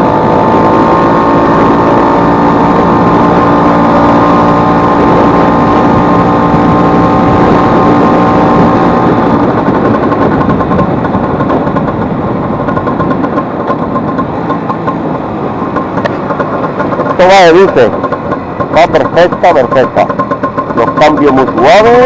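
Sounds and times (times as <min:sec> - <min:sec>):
scooter engine running: 0:00.0 - 0:22.0.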